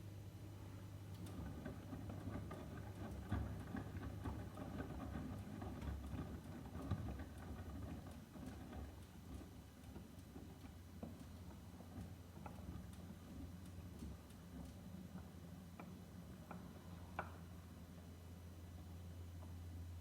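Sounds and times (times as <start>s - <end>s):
washing machine low hum: 0.0s - 20.0s
laundry tumbling in washing machine: 1.1s - 17.2s.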